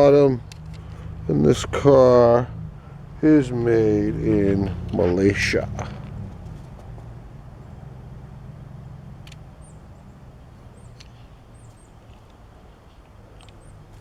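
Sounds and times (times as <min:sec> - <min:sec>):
faint clicks: 0:09.2 - 0:09.4, 0:10.9 - 0:14.0.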